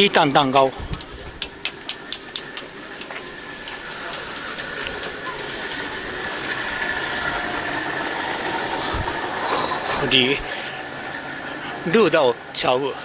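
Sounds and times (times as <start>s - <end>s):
steady hiss: 0.0s - 13.0s
sharp clicks: 1.0s - 3.1s.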